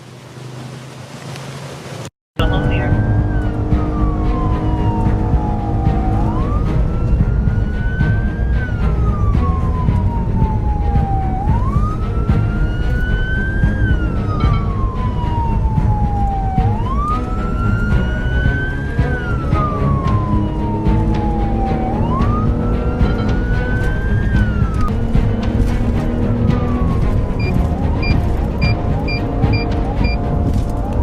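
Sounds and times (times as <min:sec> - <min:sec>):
road and engine rumble: 0:00.0 - 0:31.0
police siren wailing: 0:02.4 - 0:25.2, 0:26.0 - 0:31.0.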